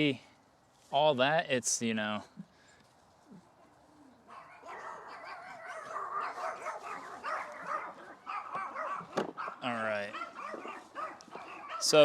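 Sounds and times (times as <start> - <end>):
dogs barking and yipping: 4.2 - 12.0.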